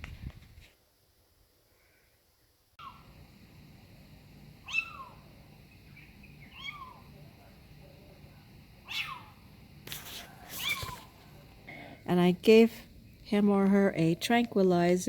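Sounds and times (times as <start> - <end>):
faint low hum: 0.0 - 15.0
cat meowing: 4.6 - 5.2, 6.5 - 7.1, 8.9 - 9.4, 10.5 - 11.1.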